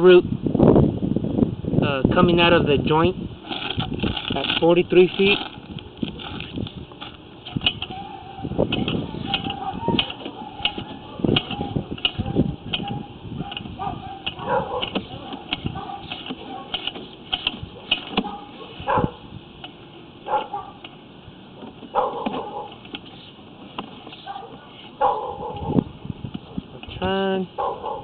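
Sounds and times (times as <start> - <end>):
camera cable knocking and scraping in pipe: 3.4 - 8.0, 8.7 - 18.4, 21.6 - 24.7.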